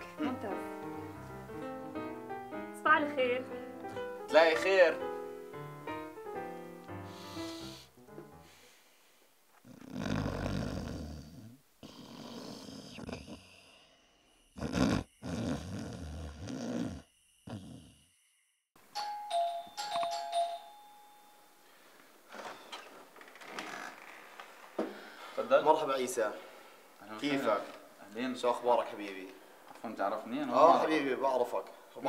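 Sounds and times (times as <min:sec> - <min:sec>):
man snoring loudly: 0:07.2 - 0:07.9, 0:09.7 - 0:14.0, 0:14.6 - 0:18.1
ding-dong doorbell chime: 0:18.9 - 0:21.6.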